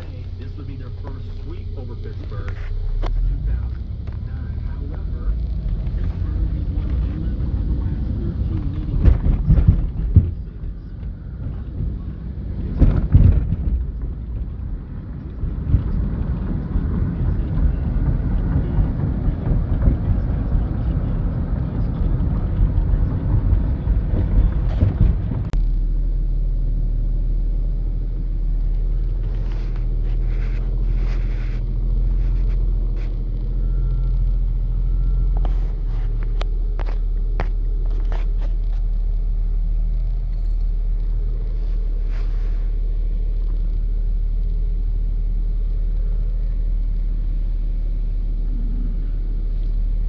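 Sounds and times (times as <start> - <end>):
vehicle rumble from inside: 0.0 - 50.0.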